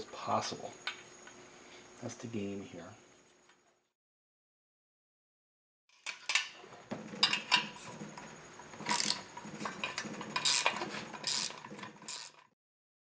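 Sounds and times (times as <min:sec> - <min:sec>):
metal scraping rasps: 0:08.8 - 0:12.5.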